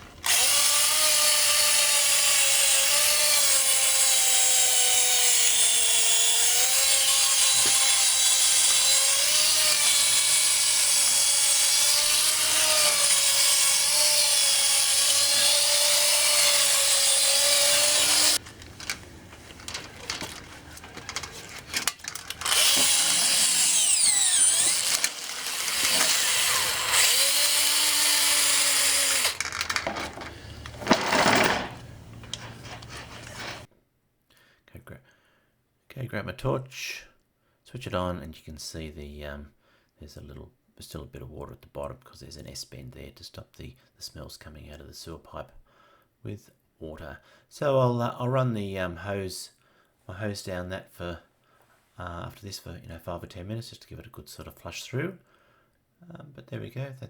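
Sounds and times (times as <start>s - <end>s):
cordless drill motor whine: 14.8s - 31.0s.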